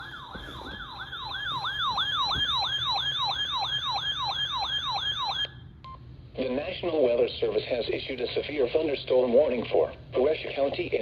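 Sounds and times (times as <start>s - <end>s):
electronic siren alert tone yelping: 0.0s - 5.6s.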